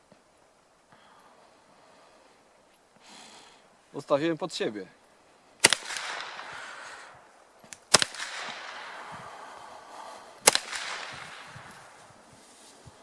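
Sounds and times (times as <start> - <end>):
gunshots with echo: 5.6 - 6.8, 7.9 - 9.4, 10.4 - 12.0.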